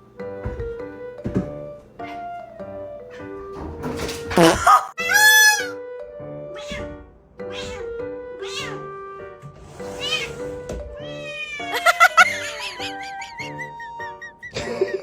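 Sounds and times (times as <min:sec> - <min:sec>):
background music: 0:00.0 - 0:15.0
cat meowing: 0:06.4 - 0:09.2, 0:09.8 - 0:12.9.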